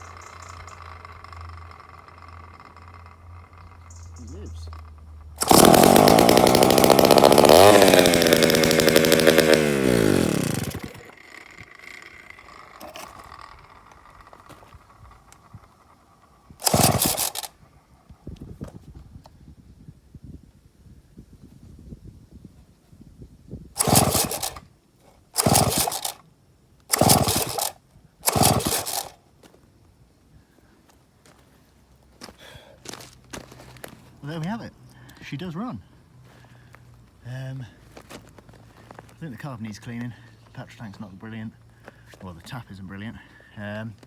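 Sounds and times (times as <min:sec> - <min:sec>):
chainsaw engine running: 0:00.0 - 0:18.8, 0:23.8 - 0:24.7, 0:25.3 - 0:26.3, 0:26.9 - 0:29.2, 0:37.6 - 0:44.0.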